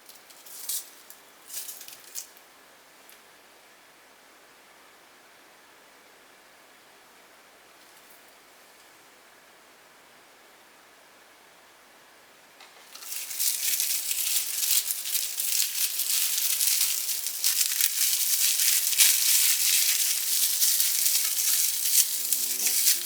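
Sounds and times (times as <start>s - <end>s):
hot fat sizzling and crackling: 12.9s - 23.0s.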